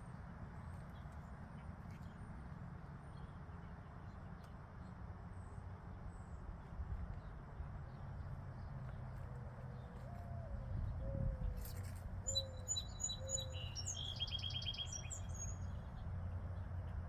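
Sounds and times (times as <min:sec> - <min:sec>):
faint high bird chirps: 0:10.4 - 0:16.0.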